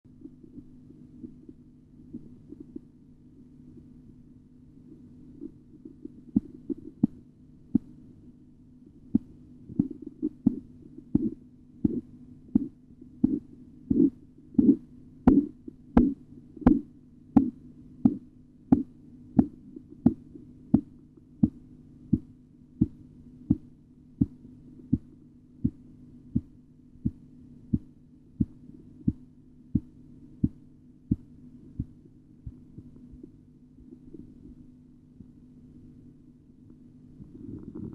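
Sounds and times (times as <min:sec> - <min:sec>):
steady low hum: 0:00.0 - 0:37.9
pulse taps through stethoscope: 0:09.2 - 0:21.6.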